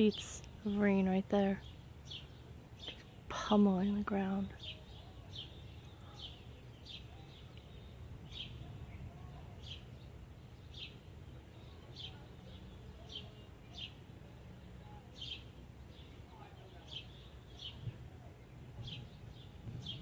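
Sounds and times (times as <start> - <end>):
bird chirping: 0.0 - 20.0.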